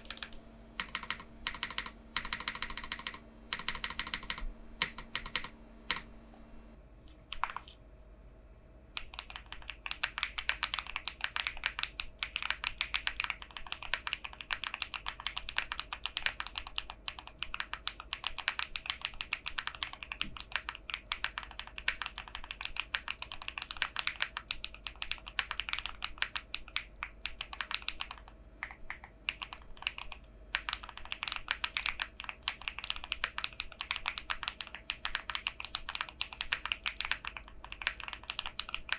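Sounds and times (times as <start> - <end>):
fast typing on mechanical keyboard: 0.0 - 6.1, 7.3 - 7.7, 9.0 - 38.9.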